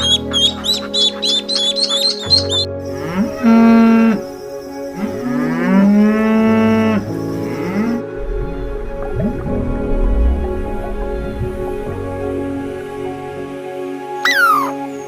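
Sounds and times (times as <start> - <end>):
high bird calls: 0.0 - 2.7, 14.2 - 15.0
soft background music: 0.0 - 15.0
cow mooing: 3.0 - 4.2, 5.0 - 8.0.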